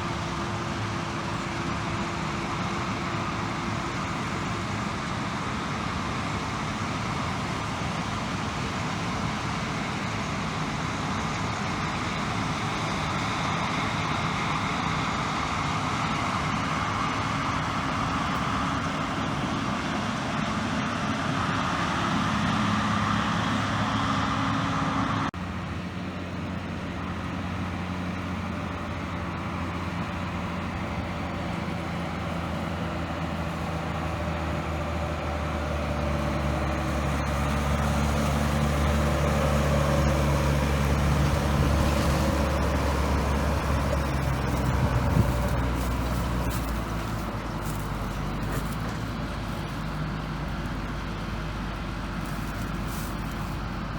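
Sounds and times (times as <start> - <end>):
diesel engine running: 0.0 - 53.9.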